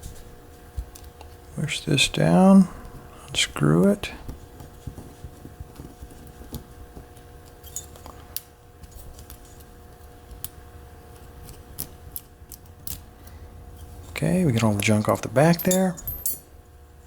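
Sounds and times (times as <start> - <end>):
metal lock parts clicking: 11.4 - 13.0, 14.4 - 16.5.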